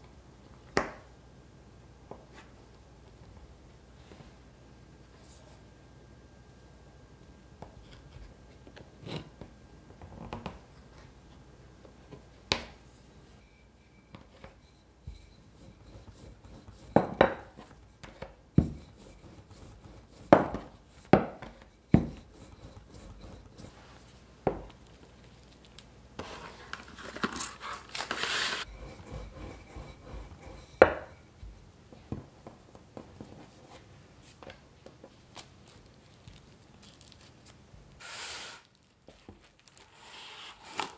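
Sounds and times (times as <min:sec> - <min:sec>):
crinkly rustling: 0:24.8 - 0:28.7, 0:35.2 - 0:37.6, 0:38.7 - 0:40.0.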